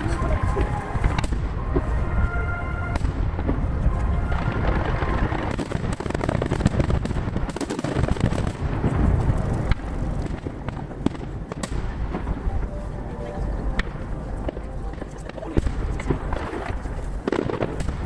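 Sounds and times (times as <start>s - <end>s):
booming rumble: 0.0s - 18.0s.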